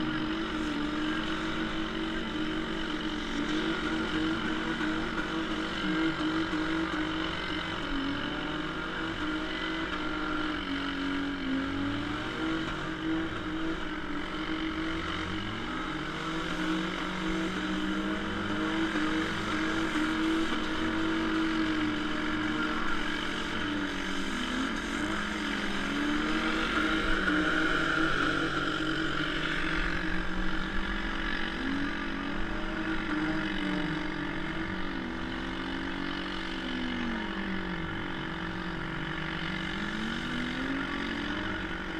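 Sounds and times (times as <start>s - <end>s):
car engines revving: 0.0s - 41.9s.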